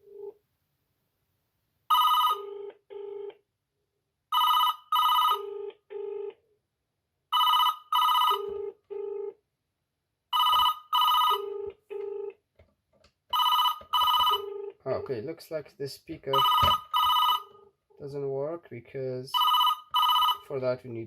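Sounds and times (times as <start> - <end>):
telephone electronic ringer: 13.4 - 14.7, 16.4 - 17.6, 19.4 - 20.5.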